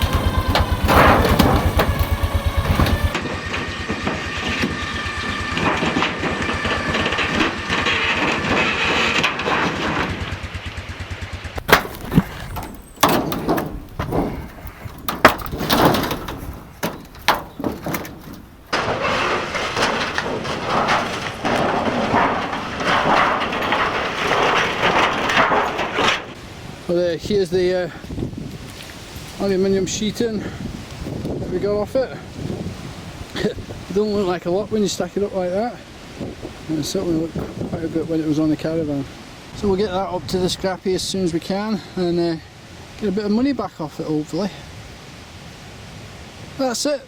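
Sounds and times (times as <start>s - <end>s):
quad bike engine running: 0.0s - 5.7s, 9.5s - 11.7s
caravan frame cracking and tearing: 0.0s - 26.4s.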